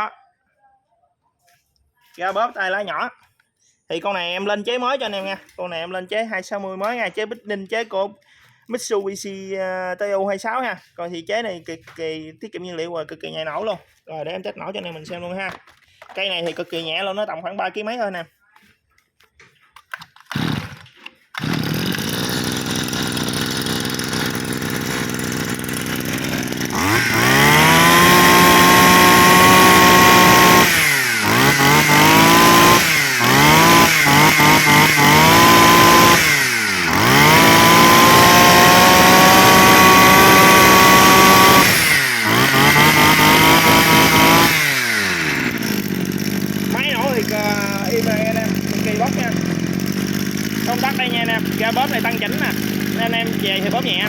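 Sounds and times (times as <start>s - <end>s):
brush cutter engine idling and revving: 19.8s - 54.0s.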